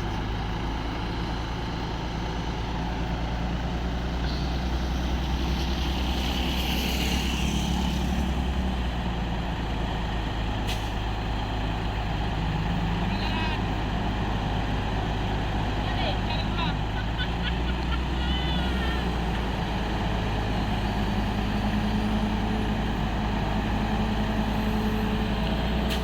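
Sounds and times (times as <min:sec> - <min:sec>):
diesel excavator engine: 0:00.0 - 0:26.0
hiss: 0:04.3 - 0:08.4.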